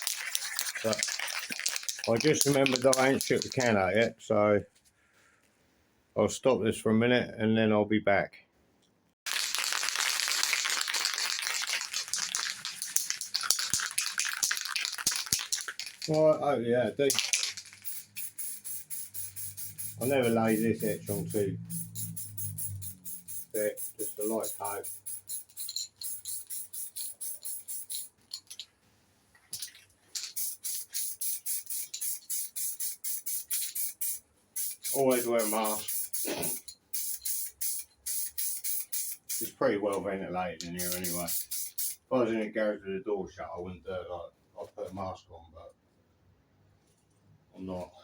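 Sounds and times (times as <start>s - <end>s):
spray can ball rattling: 0.0s - 4.1s, 9.3s - 16.4s, 17.0s - 28.7s, 29.5s - 39.6s, 40.6s - 42.1s.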